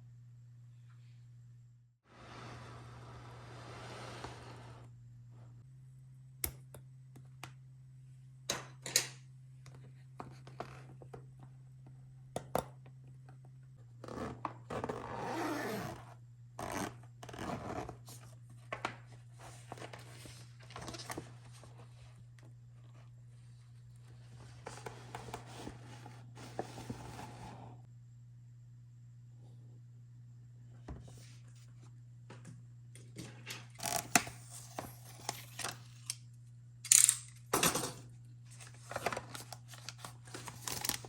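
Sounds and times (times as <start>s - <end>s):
steady low hum: 16.1s - 41.0s
packaging crinkling and tearing: 38.6s - 41.0s.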